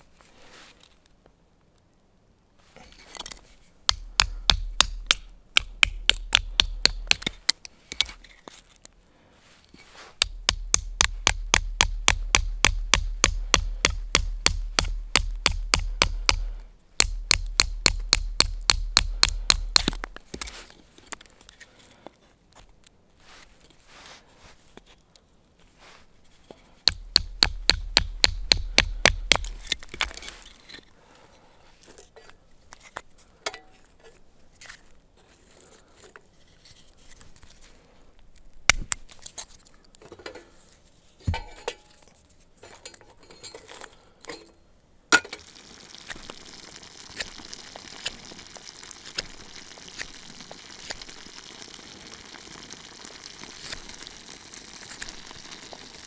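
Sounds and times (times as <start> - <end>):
steady hiss with crackle: 45.2 - 56.0.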